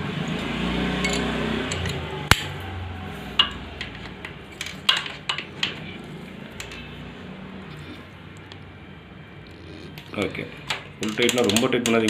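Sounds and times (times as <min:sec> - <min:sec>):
metal tools clinking: 0:01.0 - 0:02.1.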